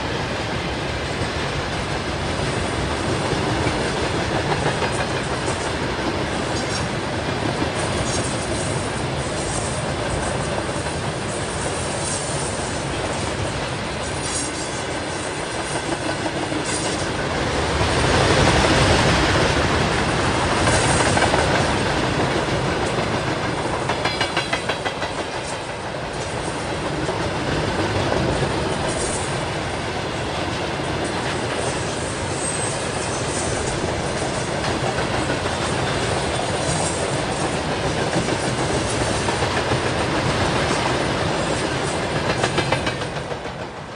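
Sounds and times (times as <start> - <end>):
freight train rolling past: 0.0 - 43.9
wheels clacking over rail joints: 1.2 - 43.9.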